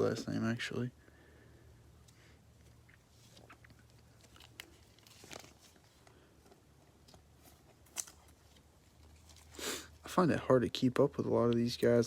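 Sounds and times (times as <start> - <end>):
cards rustling and clicking: 2.1 - 9.6.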